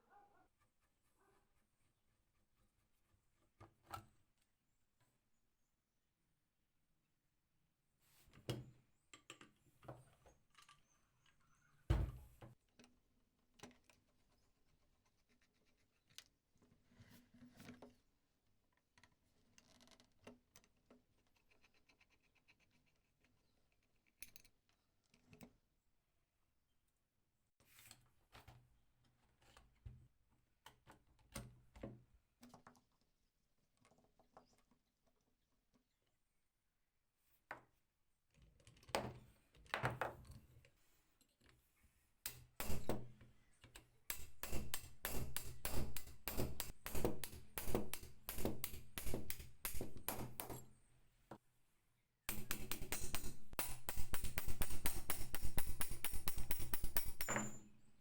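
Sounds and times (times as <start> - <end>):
hand drill clicking and rattling: 42.3 - 50.7, 52.3 - 57.6
metal clicks and knocks: 42.3 - 50.7, 52.3 - 57.7.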